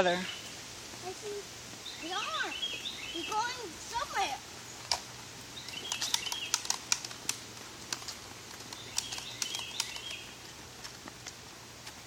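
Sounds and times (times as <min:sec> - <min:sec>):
bird chirping: 0:00.0 - 0:00.6, 0:01.8 - 0:07.2, 0:08.0 - 0:10.5
footsteps on outdoor path: 0:00.0 - 0:12.0.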